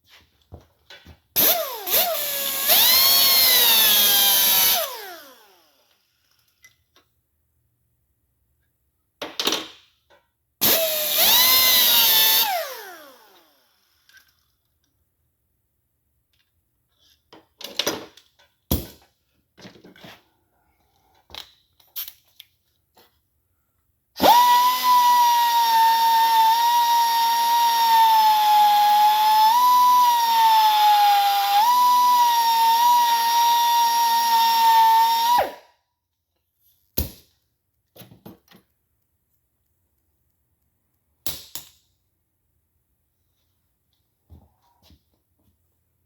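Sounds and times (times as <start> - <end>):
power drill whining: 1.4 - 6.4, 10.6 - 14.2, 24.2 - 35.6.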